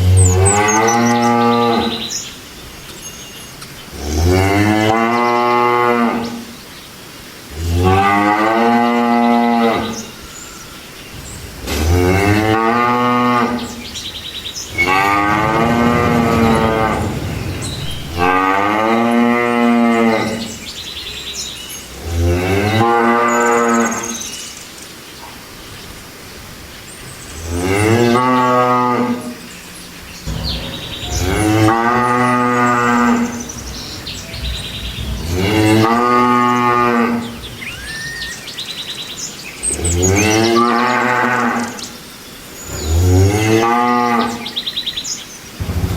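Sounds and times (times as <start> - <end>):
cattle mooing: 14.7 - 20.5, 30.2 - 38.4
faint bird chirps: 29.7 - 40.7.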